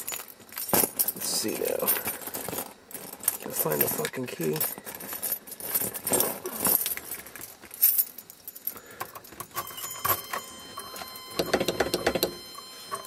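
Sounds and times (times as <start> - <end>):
keys jangling: 0.0 - 11.6
thin steady high tone: 7.8 - 13.0.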